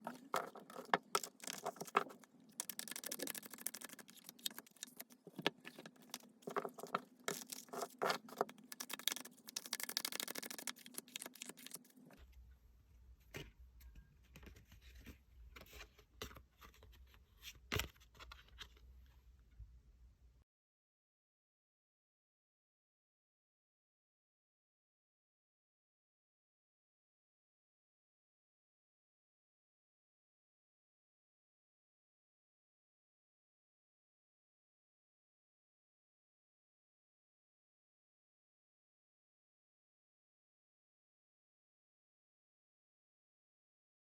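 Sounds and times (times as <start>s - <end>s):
cards shuffling: 0.1s - 11.9s.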